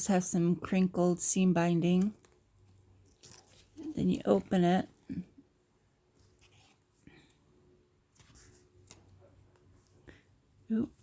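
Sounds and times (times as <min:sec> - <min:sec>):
paper rustling: 0:08.1 - 0:10.0.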